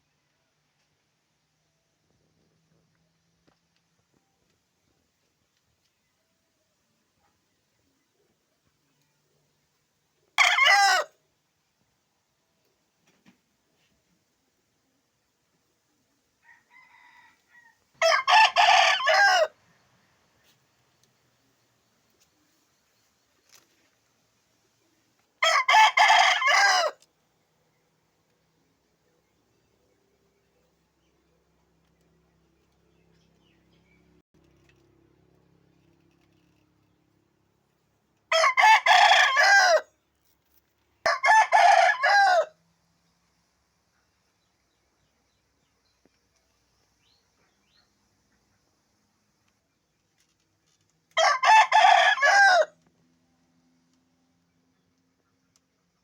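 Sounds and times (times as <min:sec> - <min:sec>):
rooster crowing: 0:10.4 - 0:11.1, 0:16.4 - 0:19.6, 0:25.4 - 0:27.0, 0:38.3 - 0:39.9, 0:41.0 - 0:42.6, 0:51.2 - 0:52.8.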